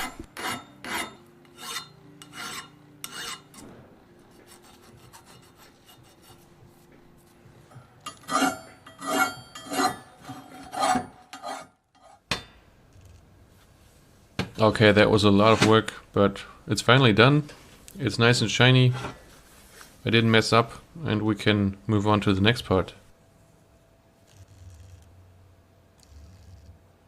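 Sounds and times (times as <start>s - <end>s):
scraping strokes on steel: 0.0s - 12.5s
faint low hum: 12.4s - 27.0s.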